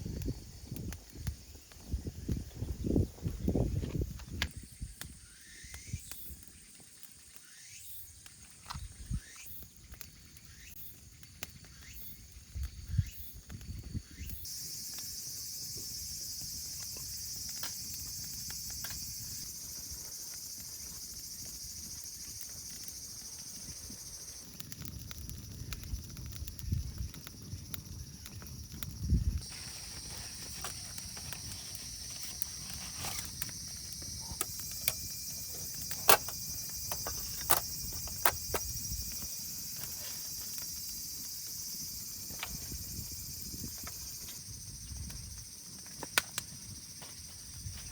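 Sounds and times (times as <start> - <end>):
insects chirring: 0.0 - 47.9.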